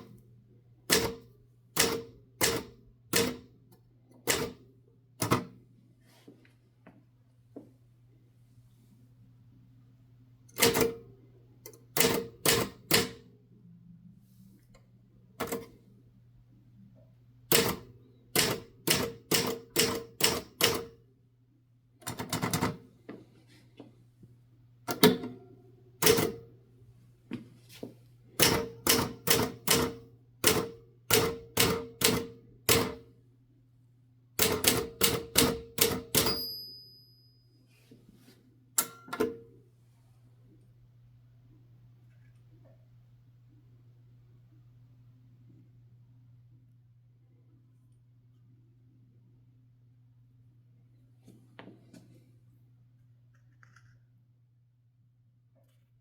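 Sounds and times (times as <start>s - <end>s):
typewriter keystroke clacks: 1.8s - 3.4s, 17.5s - 20.9s, 28.4s - 33.0s, 34.4s - 36.4s
typewriter bell ringing: 34.4s - 37.6s.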